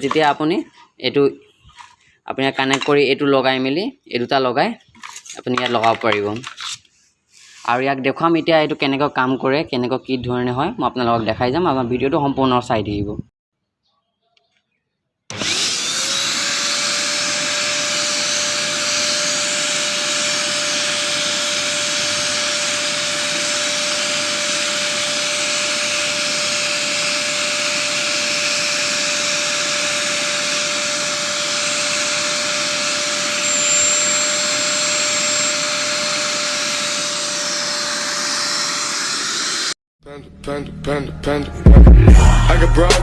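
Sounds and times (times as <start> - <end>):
vacuum cleaner motor whining: 15.3 - 39.8.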